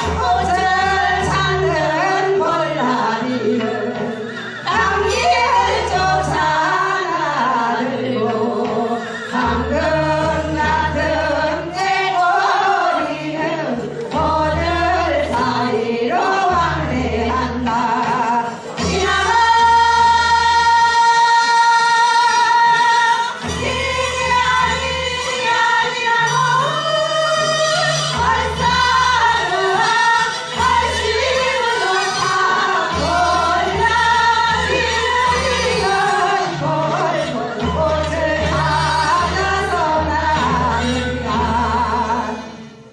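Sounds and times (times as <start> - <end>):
musical accompaniment with bass line: 0.0 - 42.9.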